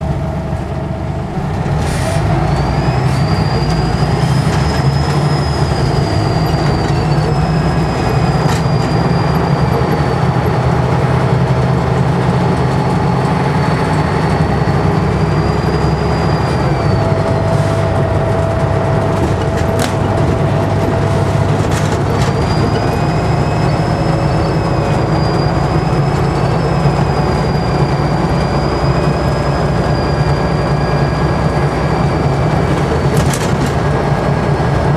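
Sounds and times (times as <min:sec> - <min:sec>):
diesel engine rumble: 0:00.0 - 0:34.9
turbocharger whistling: 0:00.3 - 0:34.9.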